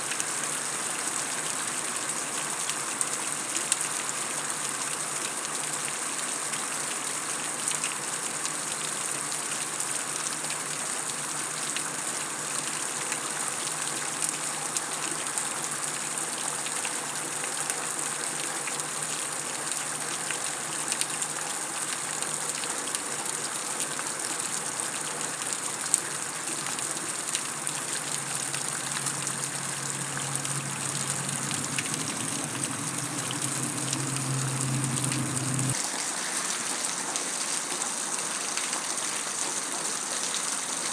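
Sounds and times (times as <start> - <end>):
water dripping: 0.0 - 39.0
heavy rain on concrete: 0.0 - 40.9
low rumble: 28.0 - 35.8.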